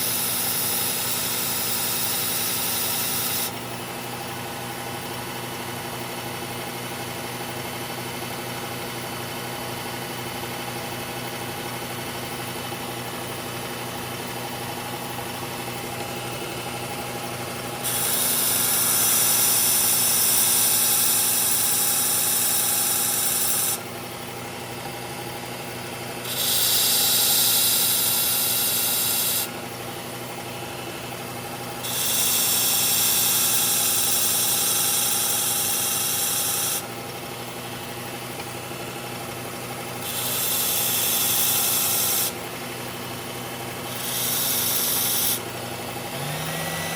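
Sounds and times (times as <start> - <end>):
knife sharpener motor humming: 0.0 - 4.4, 15.0 - 24.4, 25.7 - 38.8, 39.5 - 46.9
blade grinding against abrasive: 17.6 - 23.9, 26.2 - 29.5, 31.8 - 36.9, 40.0 - 42.4, 43.8 - 45.5, 46.1 - 46.9.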